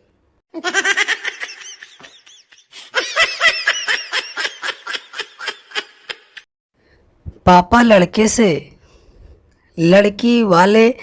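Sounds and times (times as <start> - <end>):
canned laughter: 0.6 - 6.5.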